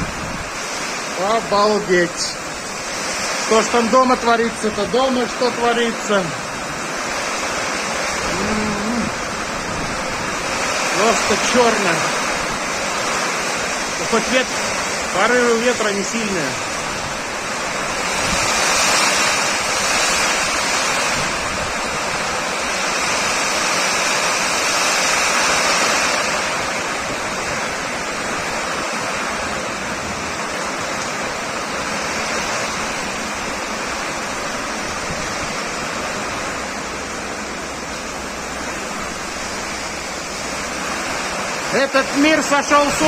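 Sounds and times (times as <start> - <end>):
torrential rain: 0.0 - 43.0.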